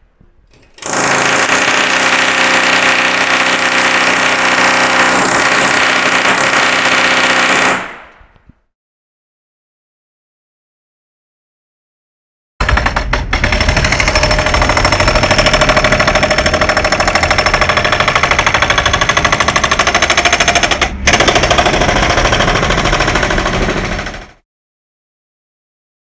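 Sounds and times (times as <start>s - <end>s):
jackhammer hammering: 0.8s - 8.4s, 12.6s - 24.4s.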